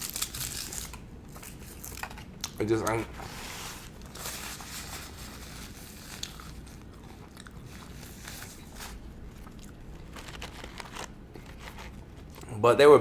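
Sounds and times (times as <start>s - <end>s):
small crunches: 3.9s - 12.5s
person chewing: 6.1s - 12.5s.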